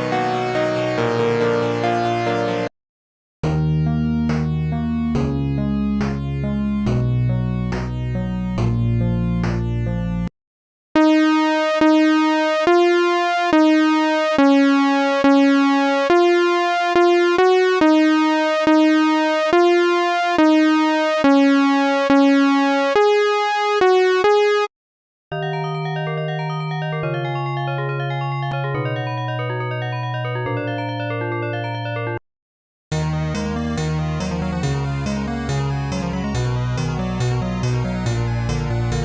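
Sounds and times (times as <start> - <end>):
synth chord: 0.0 - 2.7, 11.0 - 24.7, 32.9 - 39.0
synthesizer melody: 0.0 - 2.7, 3.4 - 10.3, 11.0 - 24.7, 32.9 - 39.0.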